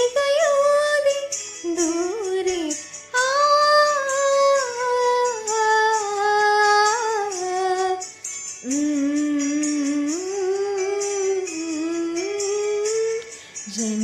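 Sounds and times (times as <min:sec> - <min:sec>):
slow song over light backing track: 0:00.0 - 0:14.0.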